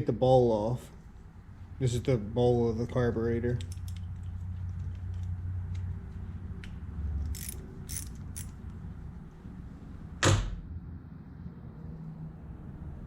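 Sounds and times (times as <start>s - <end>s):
metal clicks of hand tools: 6.6s - 8.7s
loud knock: 10.2s - 10.6s.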